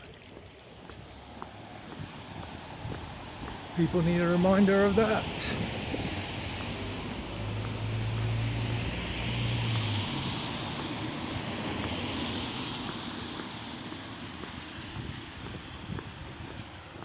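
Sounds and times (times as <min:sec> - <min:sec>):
vehicle passing: 0:01.0 - 0:16.9.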